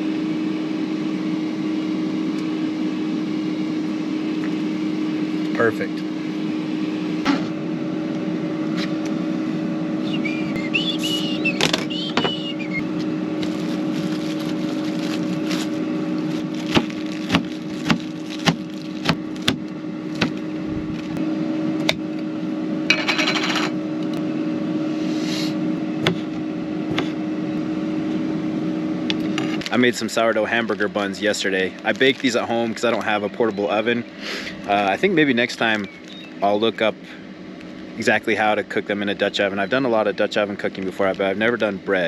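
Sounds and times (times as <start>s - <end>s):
steady hum: 0.0s - 42.0s
brief high chirping: 10.1s - 12.8s.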